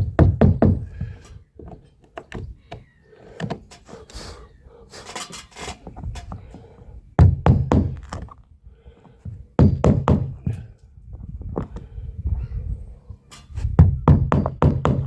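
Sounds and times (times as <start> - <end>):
tool knocking on wooden boards: 0.0 - 0.9, 7.2 - 8.2, 9.6 - 10.4, 13.8 - 15.0.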